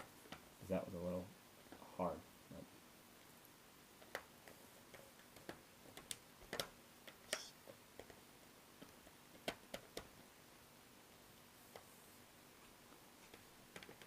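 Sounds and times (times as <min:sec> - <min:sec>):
faint plastic clicks and taps: 0:04.0 - 0:08.2.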